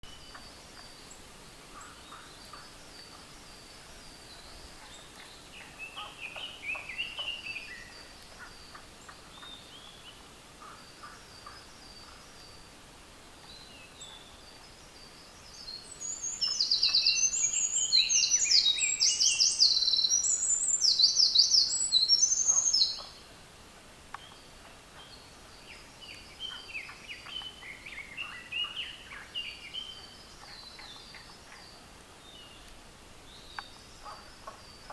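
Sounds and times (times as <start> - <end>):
faint bird song: 0.0 - 34.9
wren song of rapid trills: 13.5 - 23.2.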